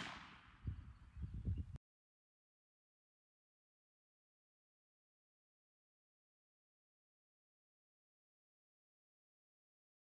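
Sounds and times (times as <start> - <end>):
shotgun shot: 0.0 - 0.6.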